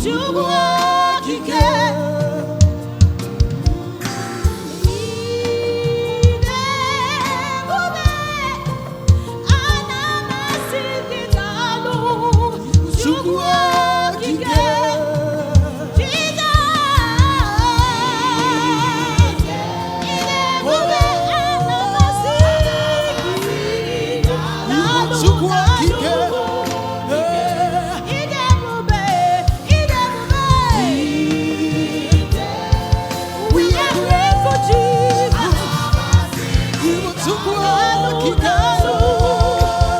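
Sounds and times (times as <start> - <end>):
choir singing gospel song: 0.0 - 39.9
low thumping beat: 28.5 - 39.9.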